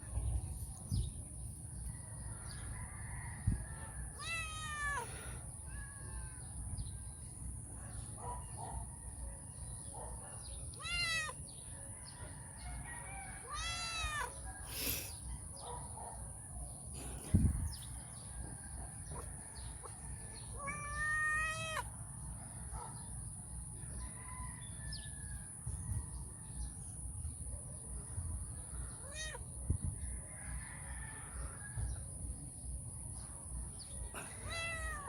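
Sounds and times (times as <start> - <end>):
cat meowing: 4.2 - 5.1, 10.7 - 11.4, 13.5 - 14.3, 20.6 - 21.9, 29.0 - 29.4, 34.4 - 35.0.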